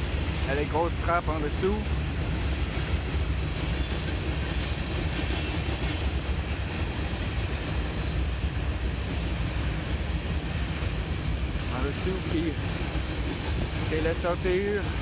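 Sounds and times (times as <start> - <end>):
steel train wheels rumbling on rail: 0.0 - 15.0.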